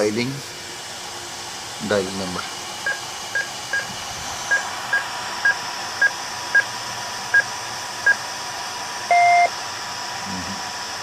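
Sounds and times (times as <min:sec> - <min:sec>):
touch-tone dialling beeps: 0:09.1 - 0:09.5.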